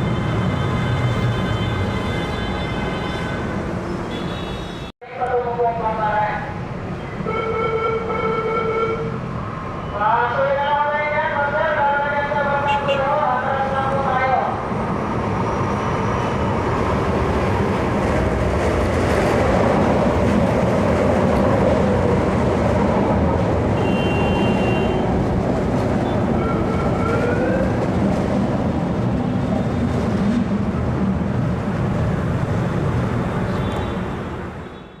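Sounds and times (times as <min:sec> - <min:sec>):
light rail train rumbling: 0:08.4 - 0:34.7.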